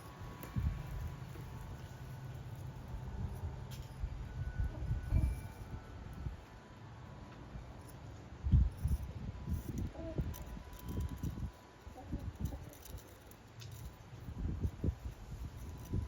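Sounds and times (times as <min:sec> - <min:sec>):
wind buffeting microphone: 0:00.1 - 0:01.8, 0:14.2 - 0:16.0.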